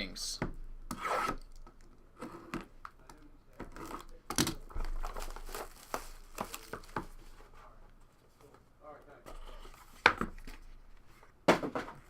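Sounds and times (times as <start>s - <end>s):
packaging crinkling and tearing: 3.9s - 7.0s.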